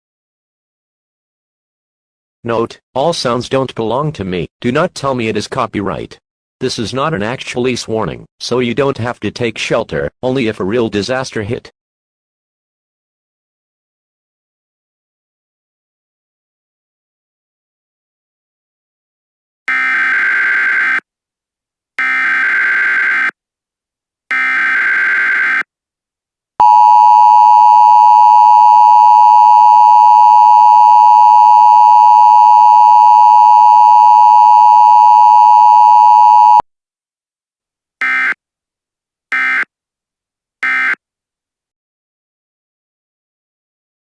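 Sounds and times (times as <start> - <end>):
two-tone attention signal: 26.6 - 36.6.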